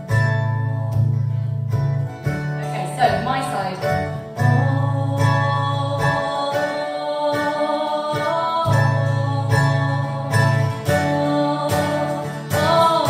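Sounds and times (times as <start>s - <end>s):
acoustic guitar strumming: 0.0s - 13.0s
crowd singing: 4.9s - 13.0s.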